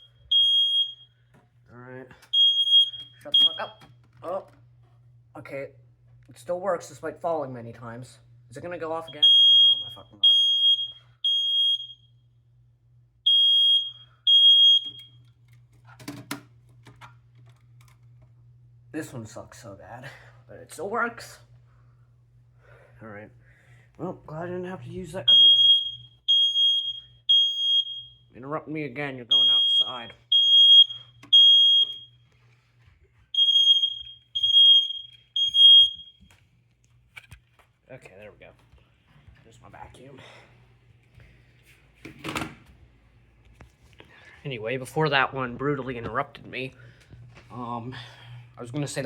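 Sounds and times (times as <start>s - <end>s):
smoke alarm beeping: 0.0s - 1.3s, 2.2s - 4.0s, 9.0s - 12.4s, 13.2s - 15.4s, 25.2s - 28.3s, 29.2s - 32.4s, 33.3s - 36.4s.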